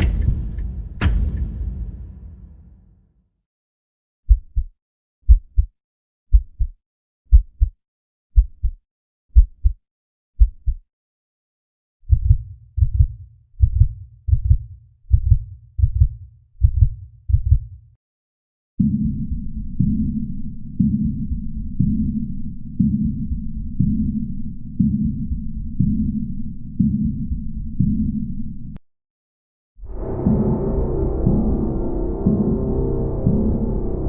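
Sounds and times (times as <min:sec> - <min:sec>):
heartbeat thumps: 0:00.0 - 0:02.7, 0:04.3 - 0:05.7, 0:06.3 - 0:07.8, 0:08.4 - 0:08.8, 0:09.4 - 0:09.8, 0:10.4 - 0:10.8, 0:12.1 - 0:17.8, 0:20.8 - 0:22.2, 0:22.8 - 0:24.2, 0:30.0 - 0:34.0.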